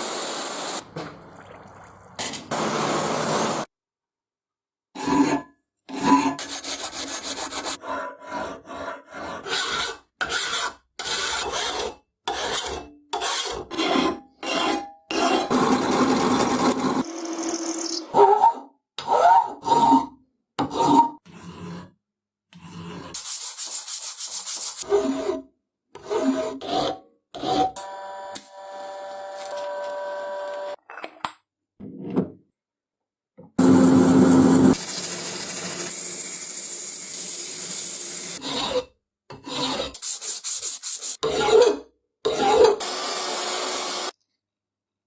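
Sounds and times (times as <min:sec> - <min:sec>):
metal scraping and rasping: 0:05.0 - 0:15.7, 0:38.4 - 0:42.8.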